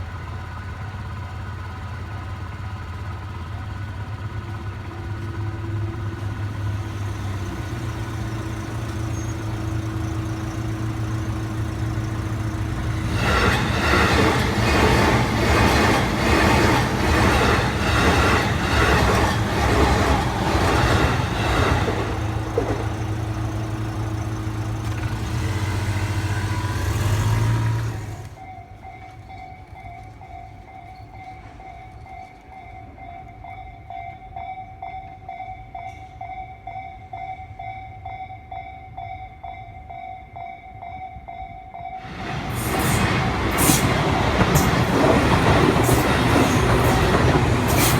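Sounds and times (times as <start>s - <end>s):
train rumble: 0.0s - 38.2s, 40.3s - 47.9s
wheels clattering over rail joints: 0.2s - 32.5s, 42.0s - 47.9s.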